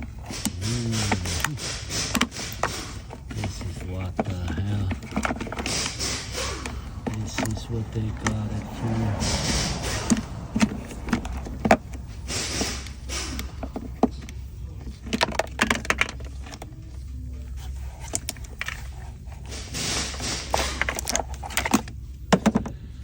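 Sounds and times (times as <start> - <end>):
light metallic rattles: 0.0 - 16.8
steady low hum: 0.0 - 23.0.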